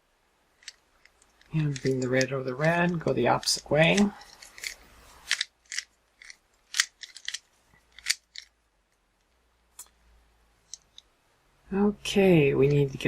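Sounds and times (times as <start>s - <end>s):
puzzle cube plastic clicks: 0.6s - 8.6s.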